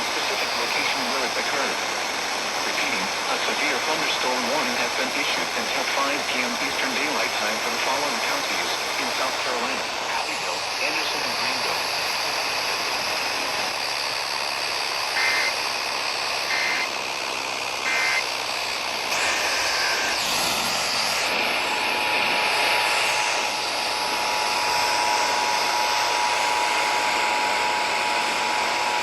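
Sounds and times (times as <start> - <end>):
radio static: 0.0 - 29.0
screeching data tone bursts: 13.8 - 17.0, 17.8 - 21.3.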